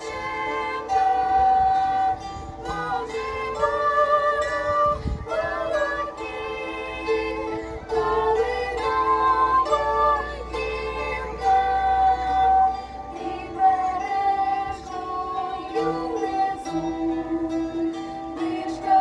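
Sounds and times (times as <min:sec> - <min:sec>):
plucked string ensemble: 0:00.0 - 0:19.0
voices singing: 0:00.0 - 0:19.0.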